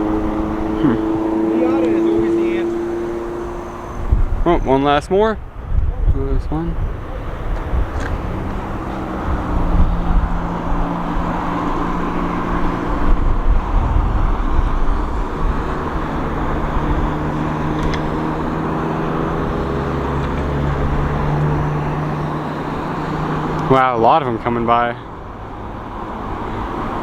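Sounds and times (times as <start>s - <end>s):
cars driving past: 0.0s - 27.0s.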